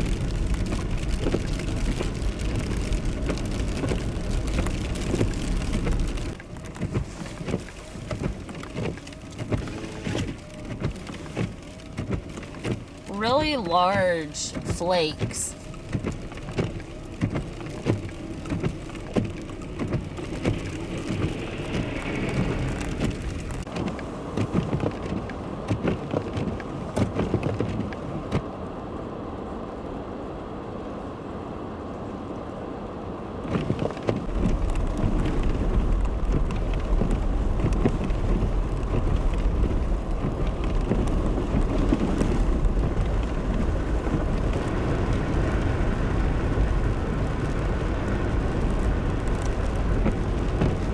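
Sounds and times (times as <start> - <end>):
low rumble: 20.4 - 23.7.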